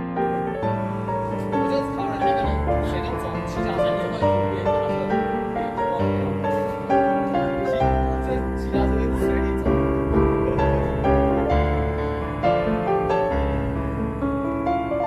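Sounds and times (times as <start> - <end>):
piano background music with beat: 0.0 - 15.0.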